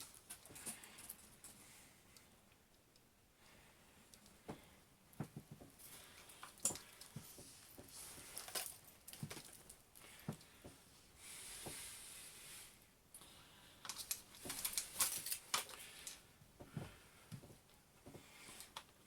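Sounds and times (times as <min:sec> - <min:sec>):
handling clicks and rustles: 0:05.1 - 0:10.5, 0:13.8 - 0:19.0.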